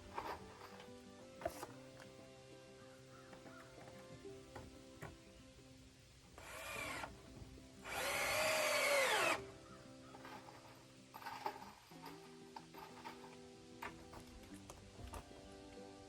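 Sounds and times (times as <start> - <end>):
background music: 0.0 - 16.0
power drill running: 6.4 - 7.2, 7.8 - 9.6.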